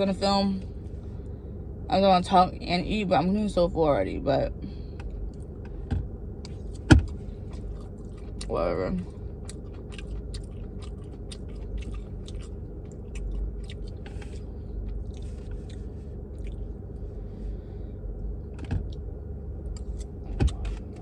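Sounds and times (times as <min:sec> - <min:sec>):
steady low hum: 0:00.0 - 0:21.0
person chewing food: 0:06.4 - 0:16.7.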